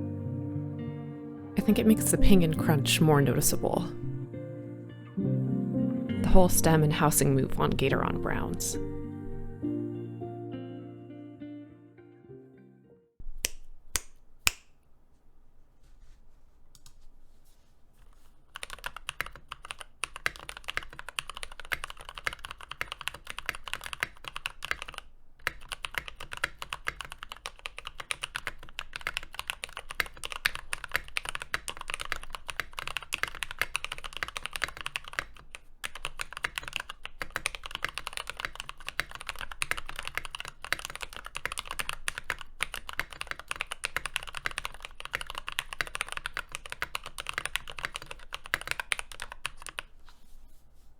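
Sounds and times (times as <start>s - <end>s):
typing on mechanical keyboard: 18.5s - 49.9s.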